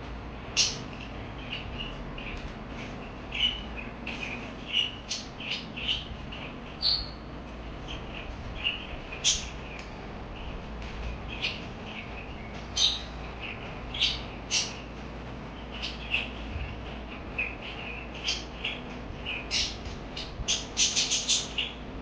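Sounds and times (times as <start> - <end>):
parakeets chirping and squawking: 0.5 - 7.2, 11.3 - 14.9, 15.6 - 21.8.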